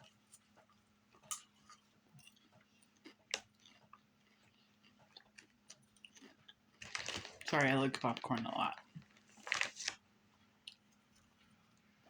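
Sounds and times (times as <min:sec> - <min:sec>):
chewing popcorn: 0:00.0 - 0:12.0.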